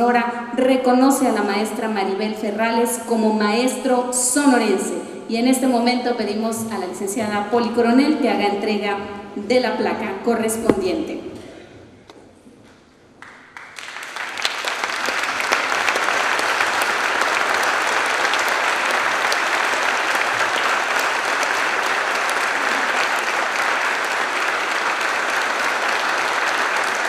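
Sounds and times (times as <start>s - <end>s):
audience applauding: 13.2s - 27.0s.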